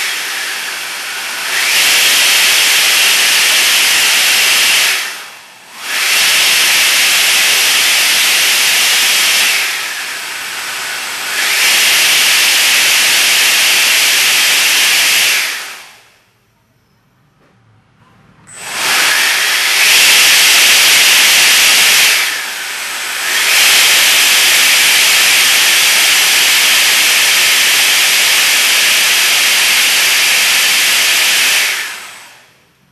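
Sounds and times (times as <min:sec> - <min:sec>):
loud steady hiss: 0:18.6 - 0:31.8.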